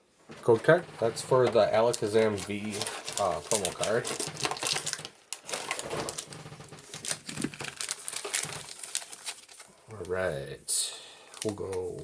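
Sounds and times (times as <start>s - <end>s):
foil wrappers crinkling: 0.4s - 10.1s, 11.2s - 12.0s
cards clicking and tapping: 1.4s - 6.3s.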